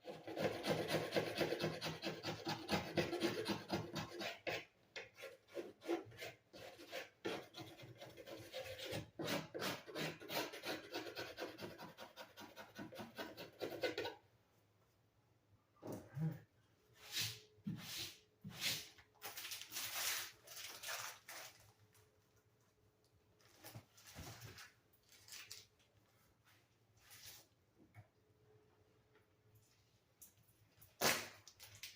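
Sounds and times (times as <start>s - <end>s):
hand tool rasping on wall: 0.0s - 14.2s.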